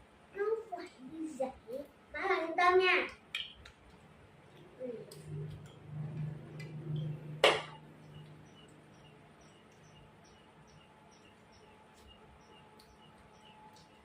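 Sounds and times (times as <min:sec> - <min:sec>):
faint low hum: 0:00.0 - 0:14.0
high chirping: 0:04.5 - 0:14.0.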